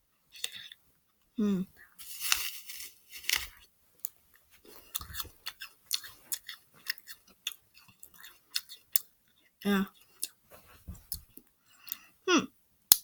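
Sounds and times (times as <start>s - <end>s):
apple being chewed: 2.2s - 12.1s.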